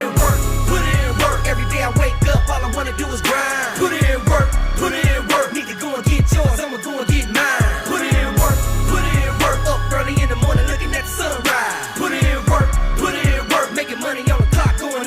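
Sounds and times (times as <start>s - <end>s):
gliding vocal line: 0.0s - 15.0s
hip hop beat: 0.0s - 15.0s
deep bass: 0.2s - 5.4s, 8.2s - 11.5s, 12.2s - 13.5s.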